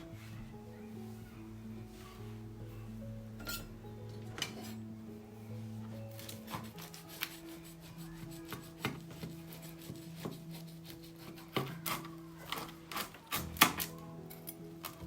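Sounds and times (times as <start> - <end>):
background music with held notes: 0.0 - 15.0
knife cutting crisp crust: 6.1 - 13.9.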